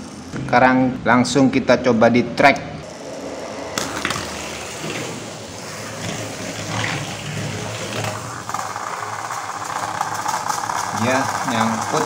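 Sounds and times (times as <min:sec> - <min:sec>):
toy car motor whirring: 0:02.8 - 0:12.0
toy car knocking on track: 0:07.8 - 0:12.0.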